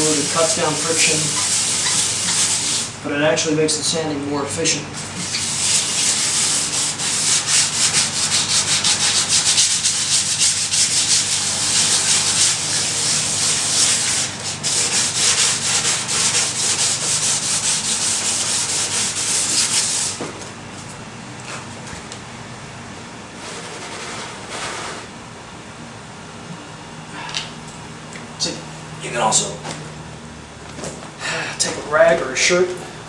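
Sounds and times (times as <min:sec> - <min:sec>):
wet sandpaper rubbing: 0:00.0 - 0:03.0, 0:05.0 - 0:20.2, 0:23.4 - 0:25.1.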